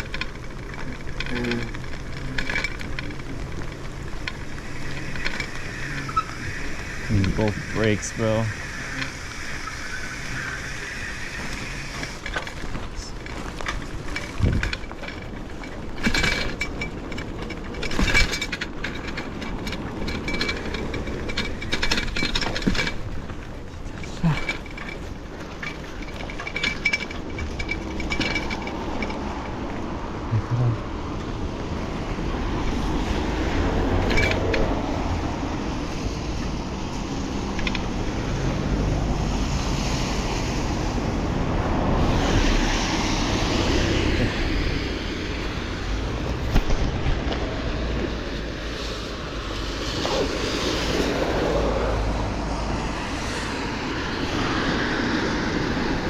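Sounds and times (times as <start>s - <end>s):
road and traffic noise: 0.0s - 56.0s
wind rumbling on microphone: 0.0s - 56.0s
thin high squeal: 4.7s - 12.2s.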